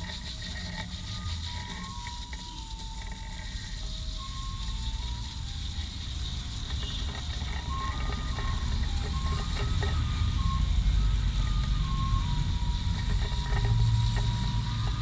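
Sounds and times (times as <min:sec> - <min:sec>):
pressure washer spraying: 0:00.0 - 0:15.0.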